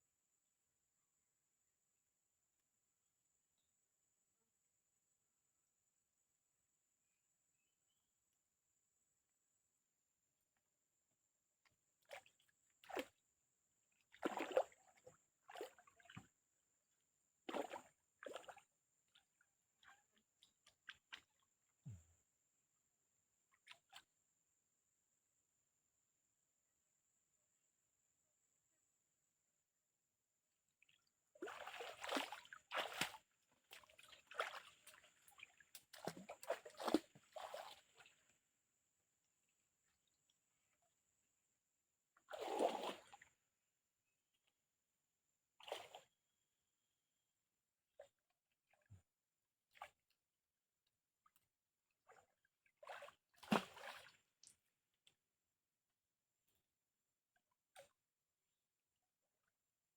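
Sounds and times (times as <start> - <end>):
river water splashing: 14.2 - 14.7, 31.4 - 38.1, 42.3 - 43.1, 52.8 - 54.2.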